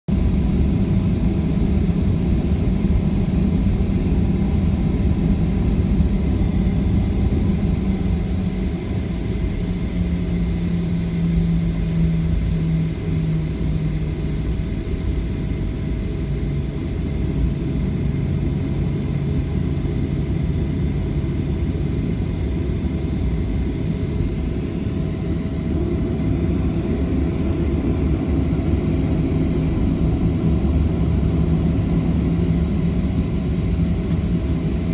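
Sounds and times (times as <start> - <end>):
jet engines low rumble: 0.1 - 34.9.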